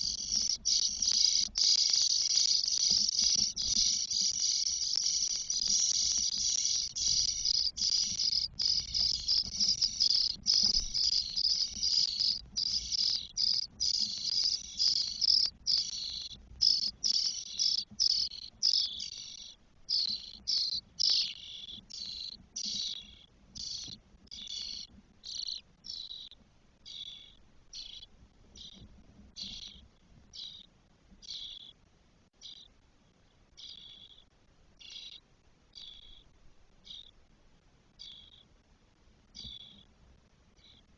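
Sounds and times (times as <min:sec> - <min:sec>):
nestlings raspy begging calls: 0:00.0 - 0:26.3, 0:26.9 - 0:28.8, 0:33.6 - 0:34.2.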